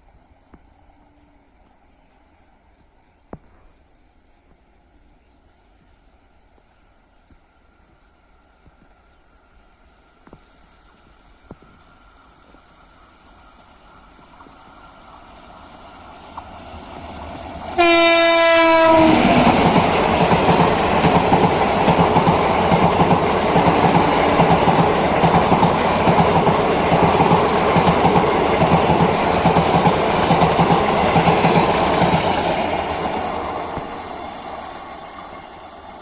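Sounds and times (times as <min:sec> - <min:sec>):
train wheels clattering on rails: 0:10.2 - 0:36.0
train rushing past: 0:11.8 - 0:36.0
locomotive horn: 0:17.8 - 0:19.8.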